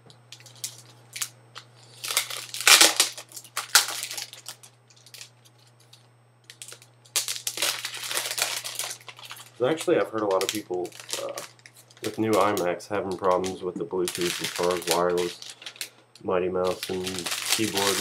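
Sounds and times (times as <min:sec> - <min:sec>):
packaging rustling and crinkling: 0:00.4 - 0:16.0, 0:16.6 - 0:18.0.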